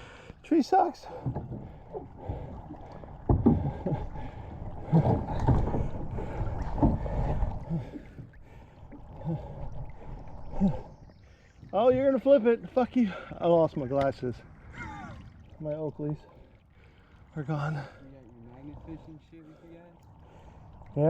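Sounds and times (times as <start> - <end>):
water sloshing and splashing: 0.0 - 21.0.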